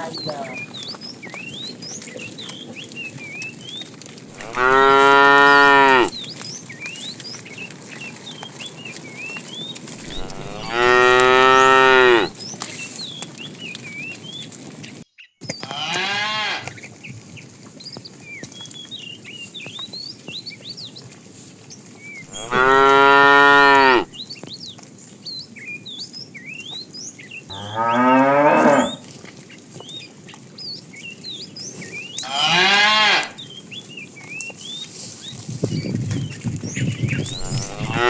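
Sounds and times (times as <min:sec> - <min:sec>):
small birds chirping: 0:00.0 - 0:15.9, 0:16.7 - 0:38.0
cows mooing: 0:04.3 - 0:06.1, 0:10.0 - 0:12.3, 0:15.7 - 0:16.7, 0:22.3 - 0:24.1, 0:27.5 - 0:29.0, 0:32.2 - 0:33.4, 0:37.3 - 0:38.0.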